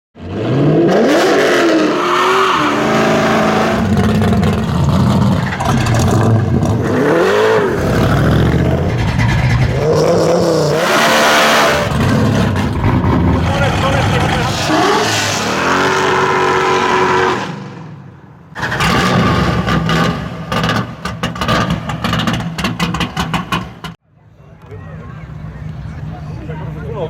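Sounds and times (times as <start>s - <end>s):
car engines revving hard: 0.2s - 24.0s.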